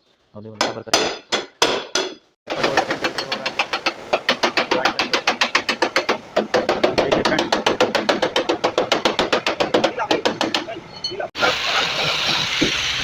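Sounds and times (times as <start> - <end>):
hammer blows on sheet metal: 0.6 - 10.9.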